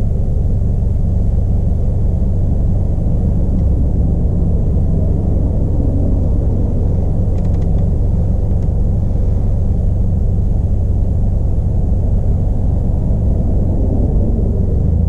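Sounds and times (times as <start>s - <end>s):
car engine rumbling: 0.0s - 15.0s
faint ticks: 7.3s - 8.8s.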